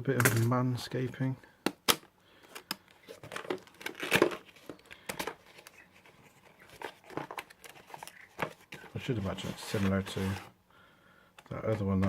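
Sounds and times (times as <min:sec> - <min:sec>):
packaging crinkling and tearing: 0:02.9 - 0:10.3.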